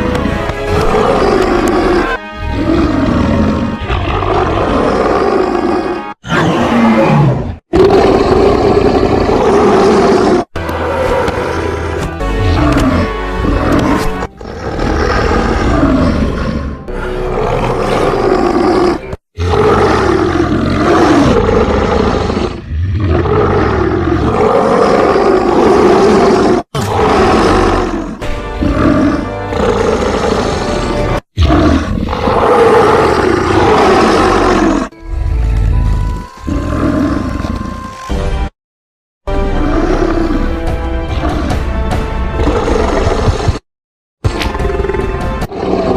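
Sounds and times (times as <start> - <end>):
music: 0.0 - 22.8, 24.1 - 38.6, 39.3 - 43.6, 44.2 - 45.9
creature roars: 0.7 - 34.9, 42.4 - 43.6.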